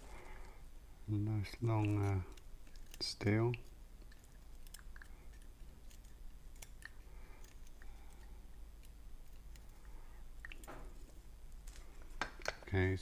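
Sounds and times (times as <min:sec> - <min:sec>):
small clicks of lock pins: 0:01.6 - 0:11.0.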